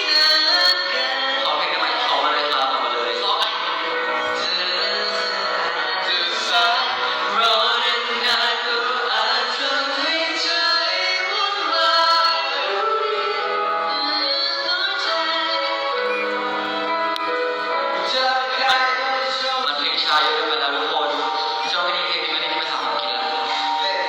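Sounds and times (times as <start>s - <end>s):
music with held notes: 0.0s - 24.0s
person singing: 0.0s - 24.0s.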